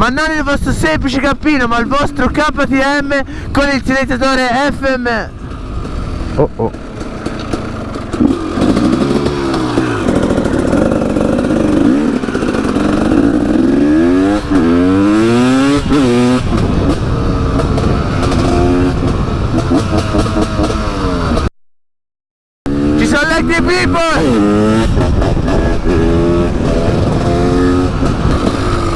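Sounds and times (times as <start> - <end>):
dirt bike engine revving: 5.4 - 21.5, 22.7 - 28.9.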